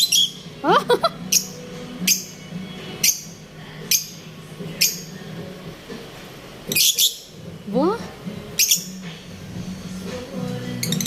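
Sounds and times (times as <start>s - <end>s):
lovebirds chirping shrilly: 0.0s - 0.6s, 1.2s - 5.2s, 6.7s - 7.4s, 8.5s - 9.1s.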